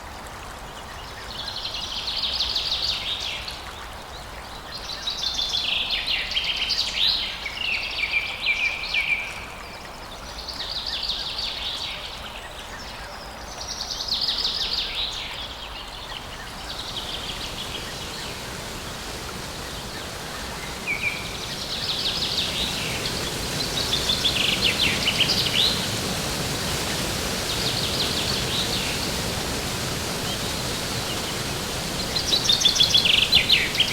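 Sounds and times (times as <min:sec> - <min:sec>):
background hiss: 0:13.6 - 0:33.9
songbird singing trills: 0:16.0 - 0:33.9.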